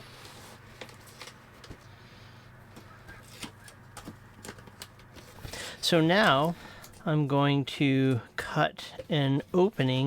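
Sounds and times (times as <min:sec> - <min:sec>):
tape clicks and rustles: 0:00.0 - 0:02.0, 0:02.6 - 0:07.1
low steady hum: 0:00.0 - 0:10.0.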